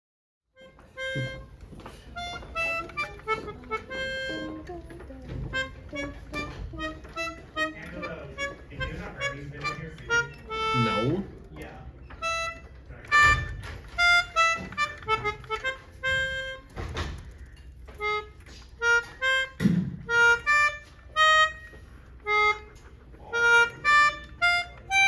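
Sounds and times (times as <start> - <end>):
harmonica-like tune: 0.6 - 11.4, 12.1 - 25.0
low thumps: 19.2 - 20.8.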